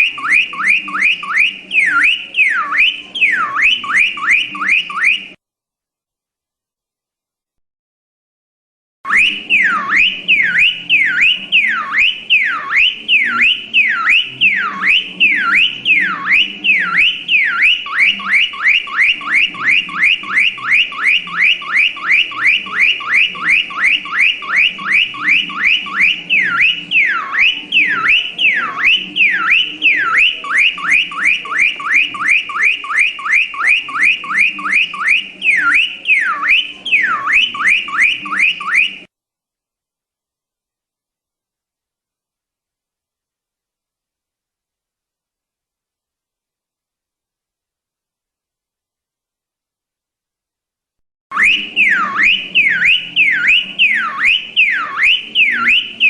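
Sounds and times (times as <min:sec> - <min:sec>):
car alarm siren: 0:00.0 - 0:05.4, 0:09.1 - 0:39.1, 0:51.3 - 0:56.0.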